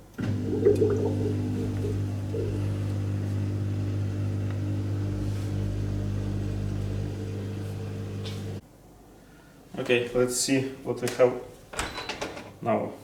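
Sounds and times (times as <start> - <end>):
dishwasher pump humming: 0.2 - 8.6.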